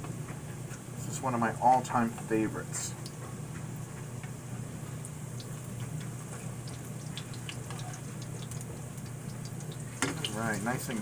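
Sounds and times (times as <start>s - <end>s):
steady low hum: 0.0s - 11.0s
oil sizzling with pops: 3.0s - 11.0s.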